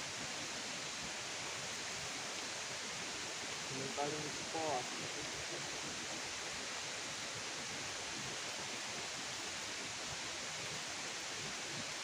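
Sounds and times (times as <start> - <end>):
outdoor night ambience hiss: 0.0 - 12.0.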